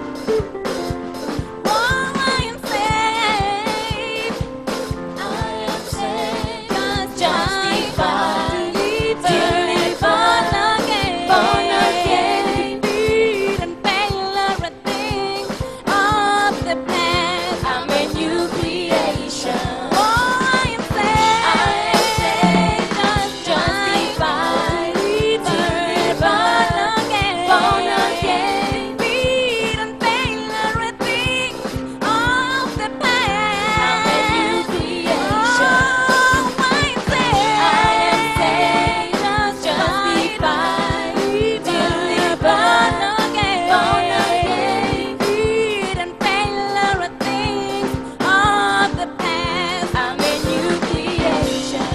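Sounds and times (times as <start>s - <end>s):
band playing: 0.0s - 2.3s, 21.0s - 23.4s
band accompaniment: 0.0s - 51.9s
gospel singers: 0.0s - 51.9s
steady drum beat: 0.0s - 51.9s.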